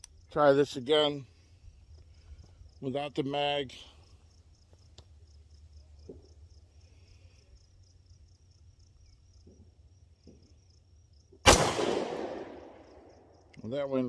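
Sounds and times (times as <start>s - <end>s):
insect chirping: 0.0s - 14.0s
faint small clicks: 4.7s - 5.1s.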